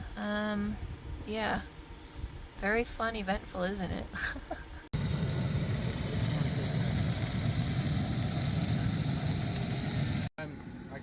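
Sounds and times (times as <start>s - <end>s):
road noise: 5.0s - 11.0s.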